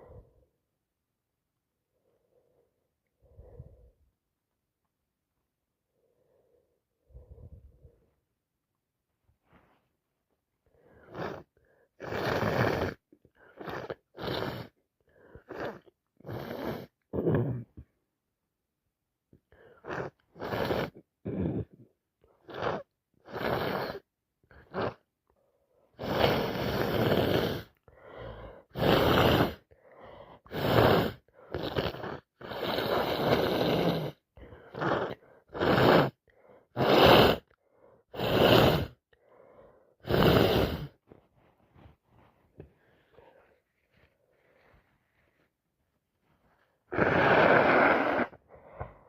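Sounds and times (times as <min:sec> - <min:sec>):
woman breathing harshly: 0:27.6 - 0:31.6, 0:34.4 - 0:41.1, 0:46.2 - 0:49.0.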